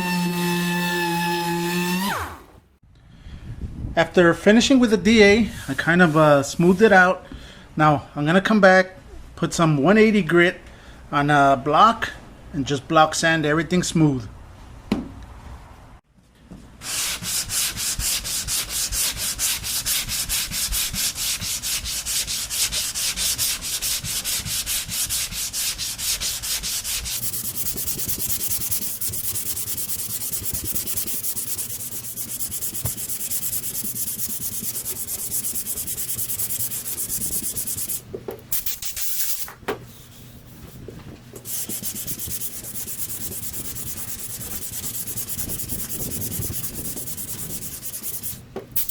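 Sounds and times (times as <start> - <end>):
sandpaper rubbing on filler: 0.0 - 2.2, 16.8 - 39.5, 41.4 - 48.9.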